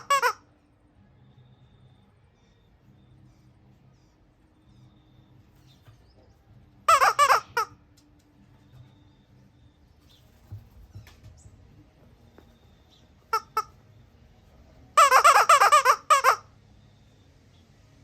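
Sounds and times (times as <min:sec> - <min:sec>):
squeaky toy squeaking: 0:00.0 - 0:00.5, 0:06.8 - 0:07.8, 0:13.3 - 0:13.8, 0:14.9 - 0:16.6.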